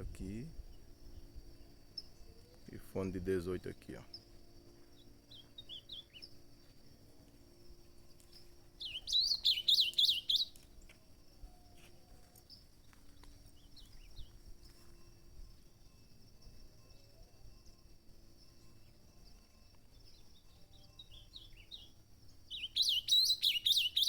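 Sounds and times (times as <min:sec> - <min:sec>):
faint bird chirps: 0:00.0 - 0:24.0
high insect drone: 0:00.0 - 0:24.0
bird warbling song: 0:04.9 - 0:06.4, 0:08.2 - 0:10.6, 0:20.0 - 0:24.0.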